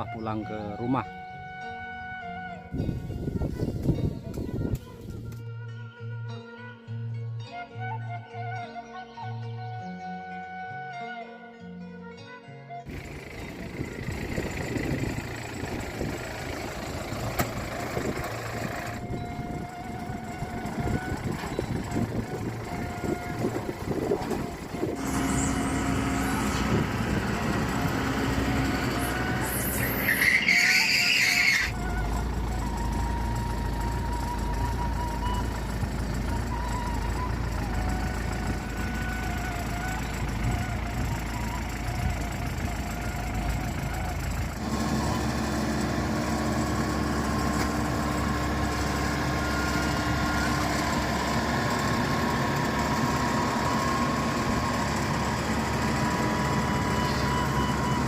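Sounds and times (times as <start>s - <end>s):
low engine hum: 1.0s - 5.4s, 12.9s - 58.0s
motor engines running: 1.2s - 5.4s, 12.9s - 58.0s
high-pitched squeal: 13.8s - 58.0s.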